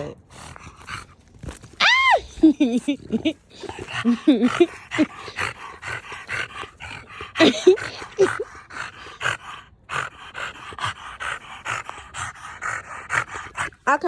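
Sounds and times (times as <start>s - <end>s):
puppy growling: 0.0s - 14.0s
puppy panting: 2.4s - 14.0s.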